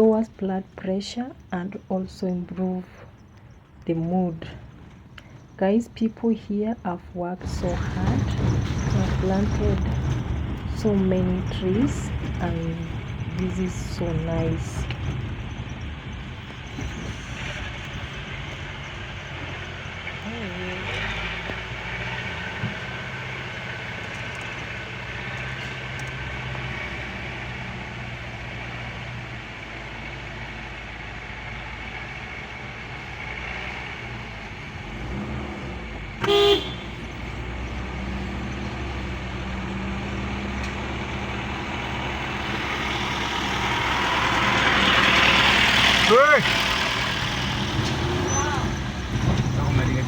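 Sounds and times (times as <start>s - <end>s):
vehicle engine hum and road noise: 0.0s - 50.0s
car horn toot: 36.2s - 37.0s.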